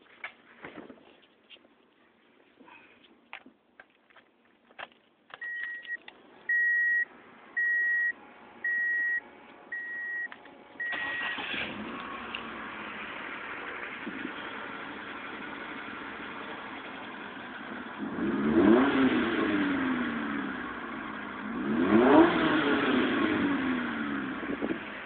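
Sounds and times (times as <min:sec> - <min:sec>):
keys clicking: 0:04.8 - 0:06.2
car engine starting and running: 0:04.8 - 0:25.0
car warning chime beeping: 0:05.4 - 0:11.6.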